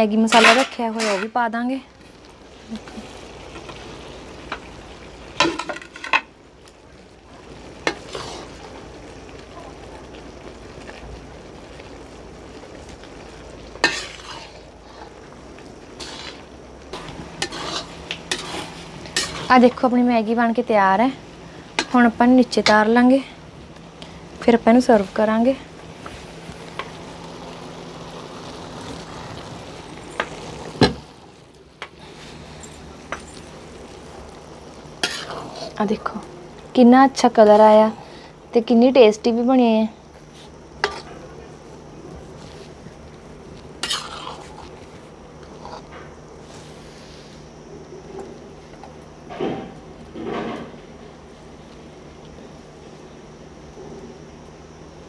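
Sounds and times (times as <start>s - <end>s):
noodles sizzling in a pan: 0.0s - 55.0s
steady low hiss: 0.0s - 55.0s
metal spoon scraping a pan: 0.3s - 1.4s, 7.8s - 8.6s, 13.8s - 15.2s, 16.0s - 19.8s, 35.0s - 35.8s, 40.8s - 41.1s, 43.8s - 44.8s, 45.4s - 46.0s.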